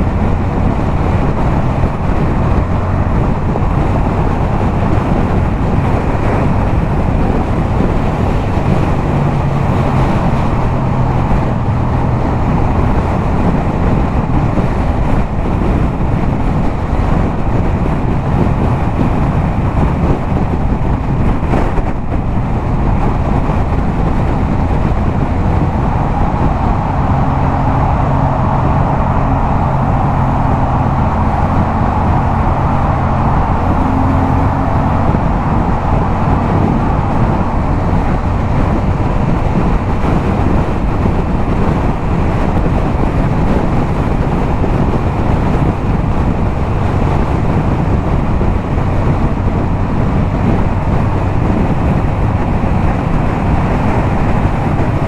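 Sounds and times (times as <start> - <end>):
motorcycle engine cruising: 0.0 - 55.0
wind rush on microphone: 0.0 - 55.0.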